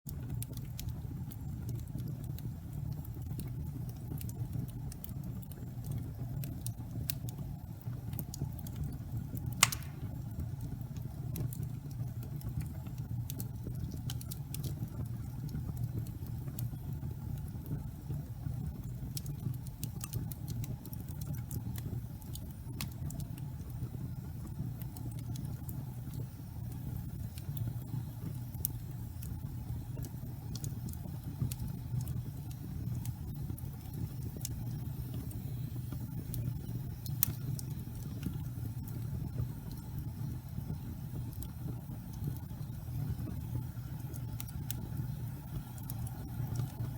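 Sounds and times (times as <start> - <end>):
wood fire crackling: 0.1 - 46.9
loud pop from fire: 9.6 - 10.3.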